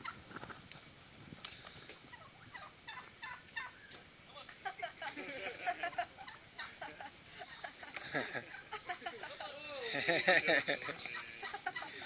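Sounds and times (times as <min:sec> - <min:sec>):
turkeys calling: 0:00.0 - 0:00.6, 0:01.6 - 0:09.5, 0:10.1 - 0:12.0.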